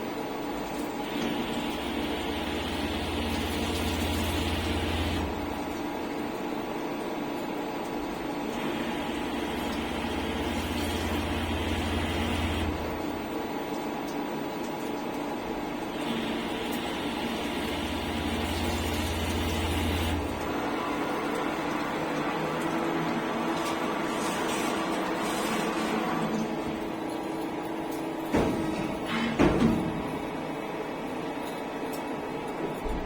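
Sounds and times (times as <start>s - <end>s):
steady machine hum: 1.0s - 13.7s
machine cutting metal: 16.0s - 26.6s.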